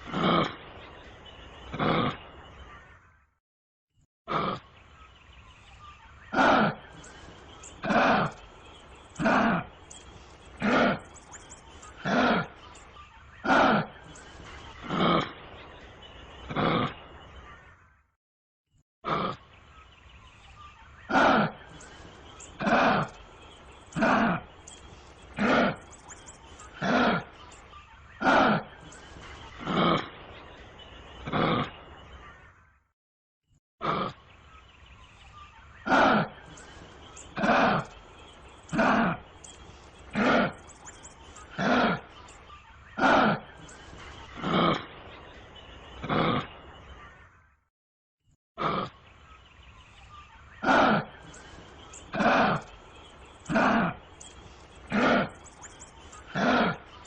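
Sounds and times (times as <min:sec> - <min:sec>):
kangaroo grunting calls: 0:00.0 - 0:00.8, 0:01.7 - 0:02.4, 0:04.3 - 0:04.7, 0:06.3 - 0:12.7, 0:13.4 - 0:15.5, 0:16.5 - 0:17.1, 0:19.0 - 0:19.5, 0:21.0 - 0:27.4, 0:28.1 - 0:30.3, 0:31.2 - 0:31.9, 0:33.8 - 0:34.2, 0:35.8 - 0:42.2, 0:42.9 - 0:45.2, 0:46.0 - 0:46.7, 0:48.6 - 0:49.0, 0:50.6 - 0:57.0.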